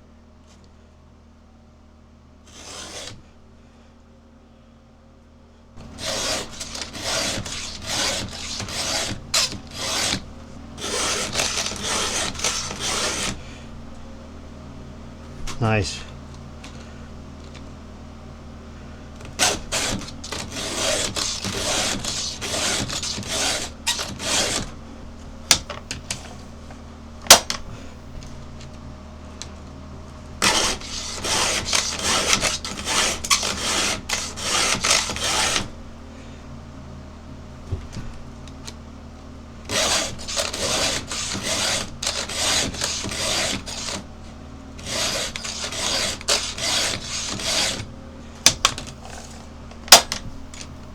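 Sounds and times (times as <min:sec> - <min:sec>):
file rasping on chainsaw chain: 0:02.5 - 0:03.2, 0:05.8 - 0:10.2, 0:10.8 - 0:13.5, 0:19.4 - 0:24.7, 0:30.4 - 0:35.7, 0:39.7 - 0:44.1, 0:44.8 - 0:47.9.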